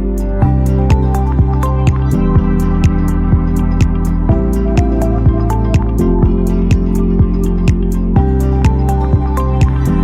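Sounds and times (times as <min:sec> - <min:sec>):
music with steady beat: 0:00.0 - 0:10.0.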